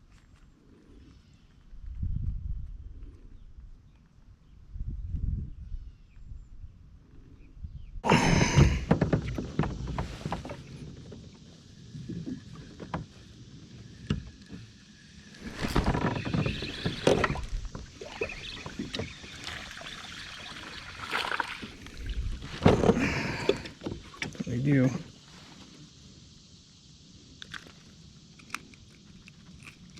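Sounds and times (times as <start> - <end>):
kayak paddling: 8.1 - 24.4.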